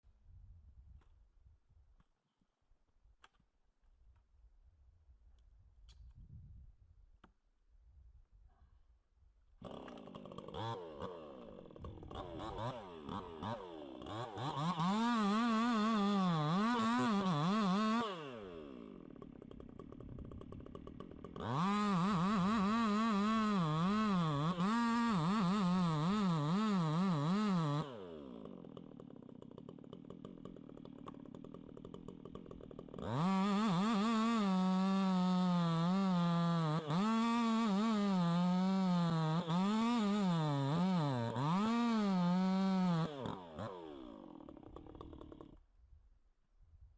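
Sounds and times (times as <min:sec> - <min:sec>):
chainsaw at full throttle: 0:09.6 - 0:45.6
chainsaw idling: 0:09.6 - 0:45.6.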